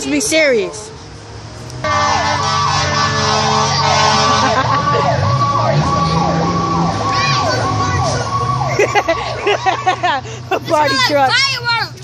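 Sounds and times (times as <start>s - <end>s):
low drone: 0.9s - 10.4s
fire engine siren: 1.8s - 10.2s.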